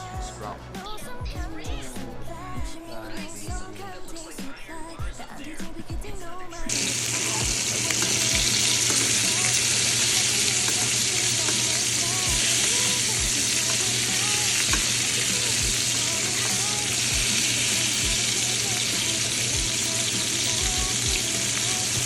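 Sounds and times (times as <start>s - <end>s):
food sizzling in a pan: 6.7s - 22.0s.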